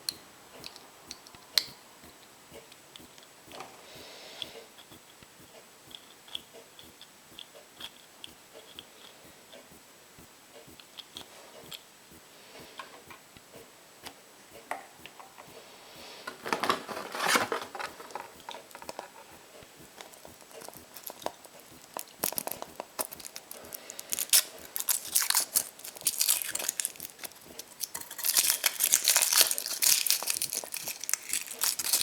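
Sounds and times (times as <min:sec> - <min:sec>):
wrapper crinkling and tearing: 0:16.2 - 0:19.3, 0:20.0 - 0:32.0.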